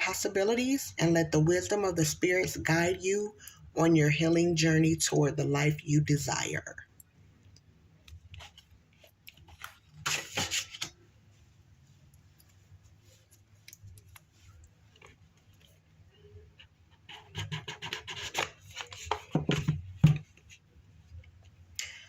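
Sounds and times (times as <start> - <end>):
paper rustling: 8.1 - 11.0, 17.4 - 20.6.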